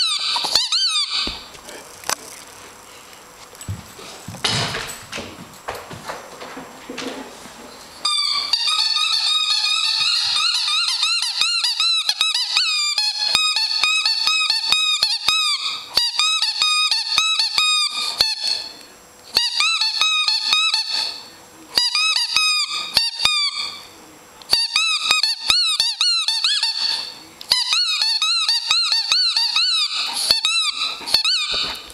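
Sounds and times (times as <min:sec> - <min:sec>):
squeaky toy squeaking: 0:00.0 - 0:01.4, 0:08.0 - 0:18.6, 0:21.8 - 0:23.8, 0:24.5 - 0:31.8.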